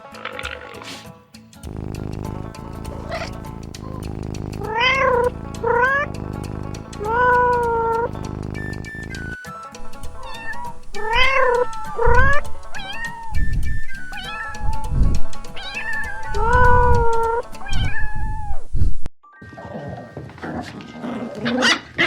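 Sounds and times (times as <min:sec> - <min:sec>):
cat meowing: 0:01.7 - 0:18.8.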